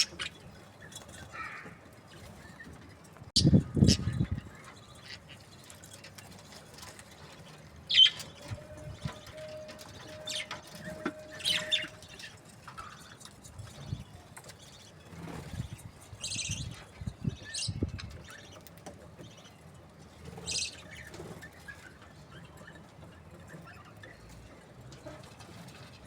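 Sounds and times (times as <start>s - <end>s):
budgerigars chirping: 0.0s - 0.4s, 7.9s - 8.3s, 11.4s - 12.3s.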